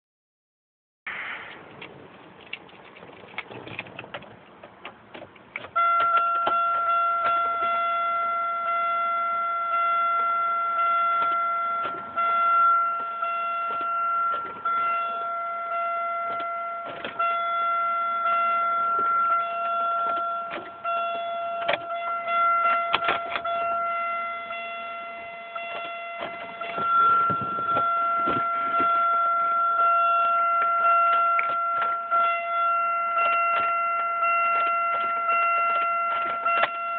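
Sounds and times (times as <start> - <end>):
steady pitched tone: 5.8 - 36.9
clicks and knocks: 22.7 - 23.6.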